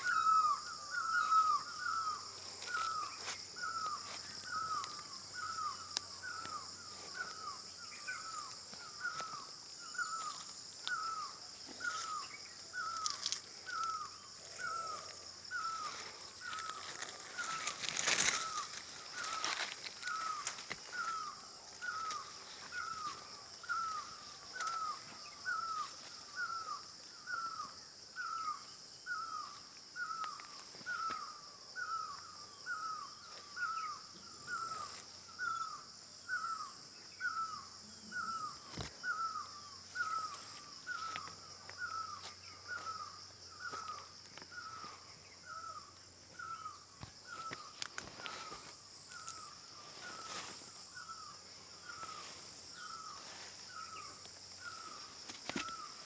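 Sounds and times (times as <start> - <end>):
steady high-pitched hiss: 0.0 - 56.0.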